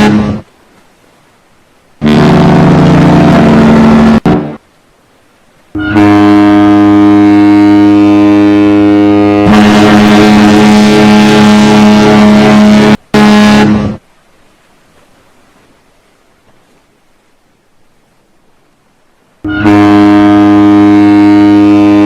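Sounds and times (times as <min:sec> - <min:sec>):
deep ship horn: 0:00.0 - 0:00.5, 0:02.0 - 0:04.6, 0:05.7 - 0:14.0, 0:19.4 - 0:22.0
higher-pitched ship horn: 0:00.0 - 0:00.5, 0:02.0 - 0:04.6, 0:05.7 - 0:14.0, 0:19.4 - 0:22.0.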